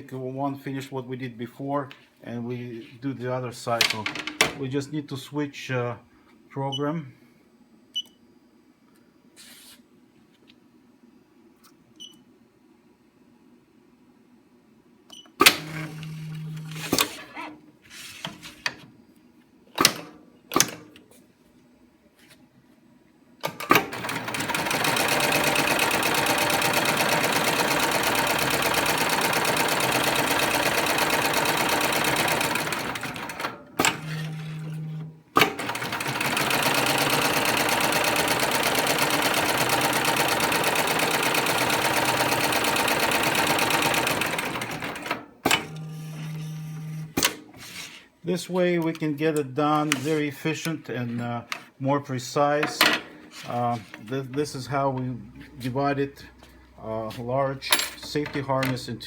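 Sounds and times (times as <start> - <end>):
clicks and knocks: 3.8 - 4.6
sewing machine stitching: 15.4 - 17.6, 23.4 - 47.9.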